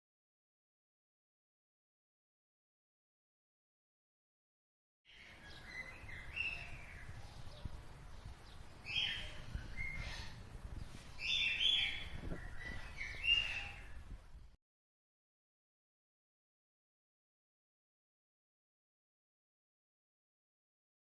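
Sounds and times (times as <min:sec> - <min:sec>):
birds chirping: 0:05.1 - 0:14.4.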